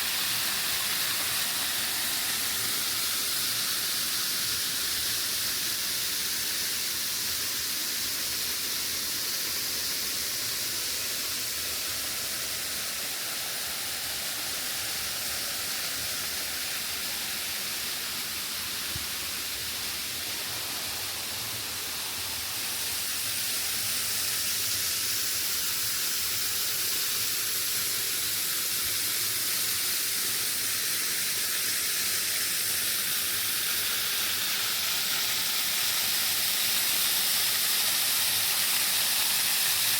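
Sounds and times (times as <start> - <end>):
waterfall rushing: 11.8 - 24.4.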